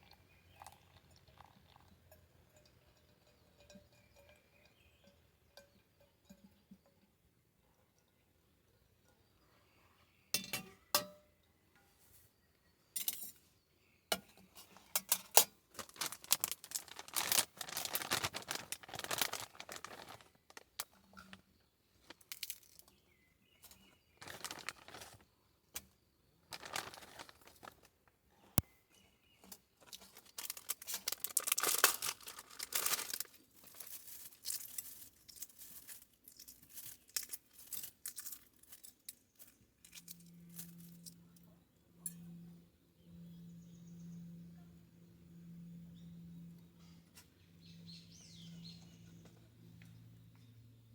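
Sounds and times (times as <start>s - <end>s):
rustling and crinkling: 14.5s - 23.0s, 23.6s - 41.2s.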